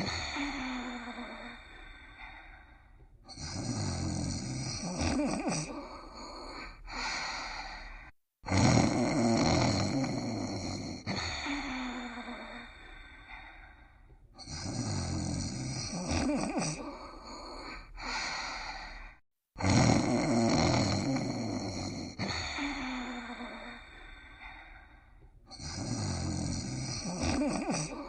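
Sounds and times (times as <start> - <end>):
cartoon dog snoring: 0.0 - 1.6, 3.2 - 6.7, 8.4 - 12.5, 14.4 - 18.2, 19.6 - 23.8, 25.5 - 28.0.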